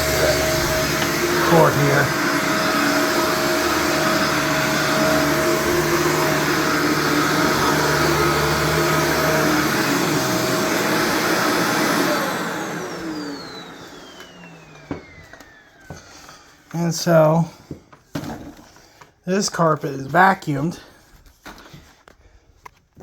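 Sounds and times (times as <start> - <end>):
vacuum cleaner motor whine: 0.0 - 17.6.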